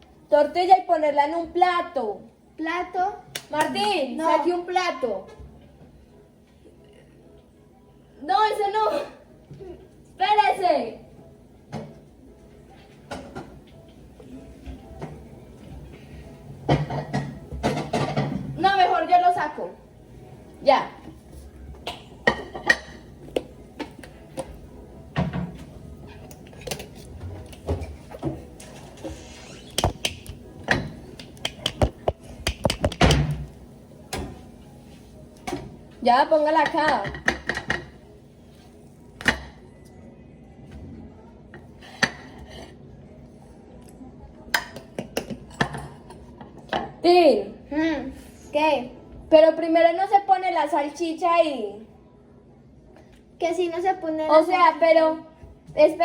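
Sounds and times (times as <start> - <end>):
dishes and utensils clinking: 14.6 - 18.6, 21.8 - 34.5, 36.6 - 38.0.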